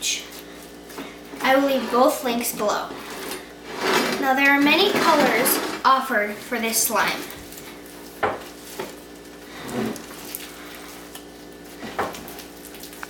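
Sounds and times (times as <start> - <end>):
slime squishes: 6.5 - 13.0.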